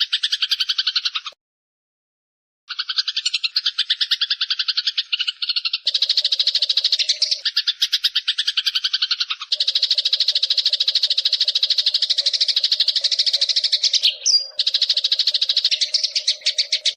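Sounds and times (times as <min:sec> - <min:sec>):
songbird pulsed trill: 0:03.1 - 0:16.9.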